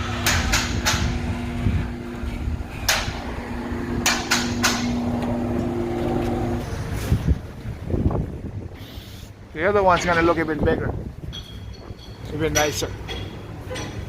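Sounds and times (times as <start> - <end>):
steady machine hum: 0.0 - 8.7
sharp knocks: 4.0 - 5.2.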